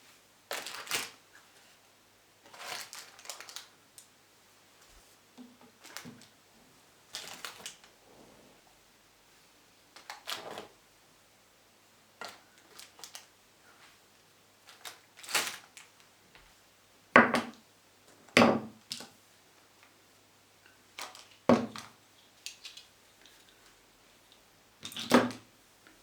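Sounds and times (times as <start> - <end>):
household objects knocking and clicking: 17.2 - 17.6.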